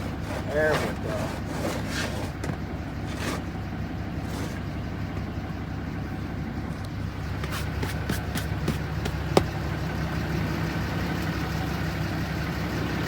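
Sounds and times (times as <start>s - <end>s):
scrapes and knocks: 0.0s - 3.6s, 4.2s - 5.3s, 7.4s - 9.6s
truck engine idling: 0.0s - 13.0s.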